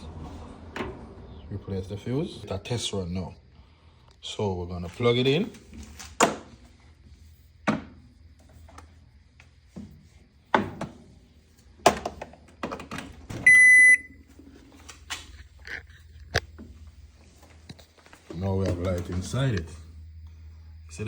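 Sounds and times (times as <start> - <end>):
short electronic beep: 13.5 - 14.2.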